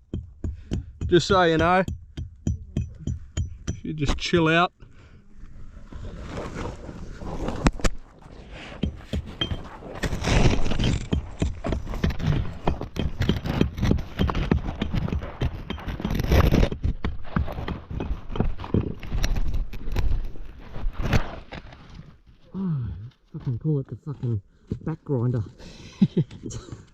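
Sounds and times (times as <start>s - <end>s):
body scraping against rock: 5.6s - 22.6s.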